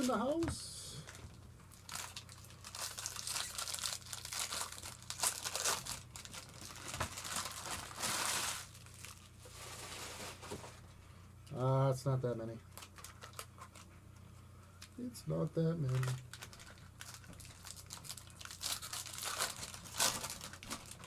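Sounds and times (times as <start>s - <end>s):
wrappers being torn and crinkled: 1.7s - 9.4s, 12.7s - 13.9s, 15.8s - 21.0s.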